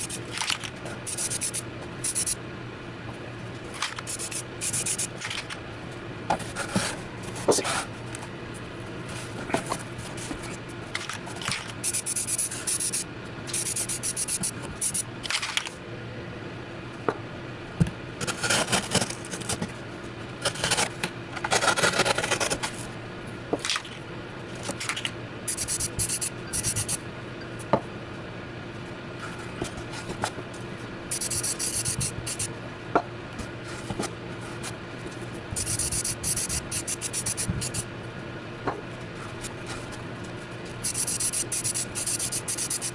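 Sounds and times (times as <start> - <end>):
spray can hissing: 1.1 - 2.4, 4.0 - 5.1, 11.8 - 15.0, 31.1 - 32.5, 35.6 - 37.8, 40.8 - 42.9.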